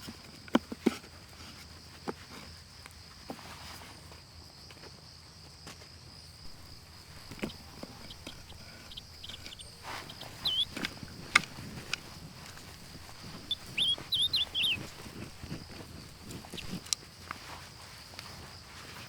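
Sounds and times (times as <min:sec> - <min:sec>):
bird chirping: 0:06.5 - 0:16.9
high insect drone: 0:06.5 - 0:17.0
sharp clicks: 0:06.5 - 0:17.0.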